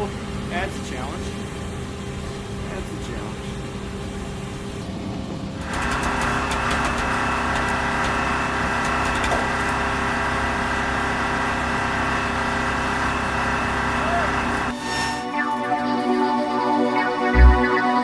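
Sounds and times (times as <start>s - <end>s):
machine hiss with whining tones: 5.7s - 15.2s.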